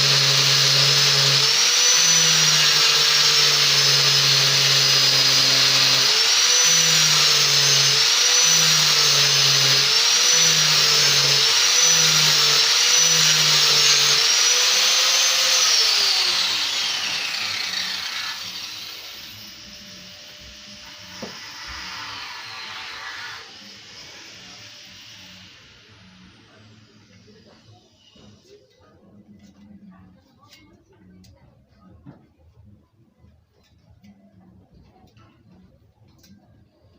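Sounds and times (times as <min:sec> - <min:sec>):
angle grinder sanding metal: 0:00.0 - 0:27.8.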